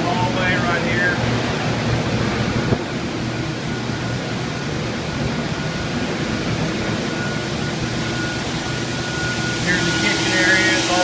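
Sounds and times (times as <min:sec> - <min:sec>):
low hum: 0:00.0 - 0:11.0
thin steady whine: 0:00.0 - 0:11.0.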